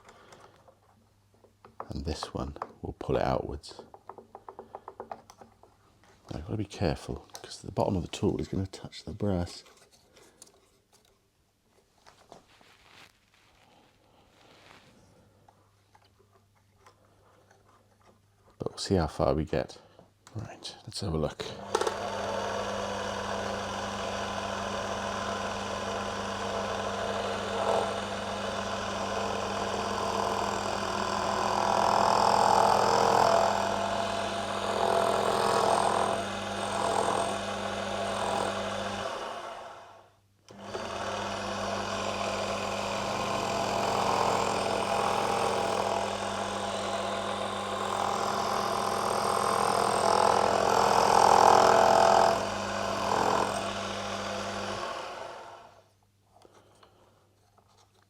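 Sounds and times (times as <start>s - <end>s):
lathe tool cutting brass: 21.6s - 39.8s, 40.5s - 55.6s
lathe motor hum: 21.6s - 55.8s.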